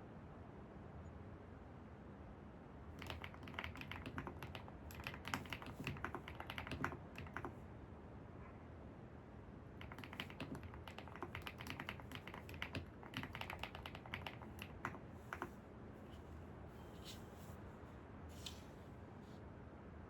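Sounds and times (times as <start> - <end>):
low ambient hum: 0.6 - 20.0
keyboard typing: 3.0 - 7.6, 9.8 - 15.6.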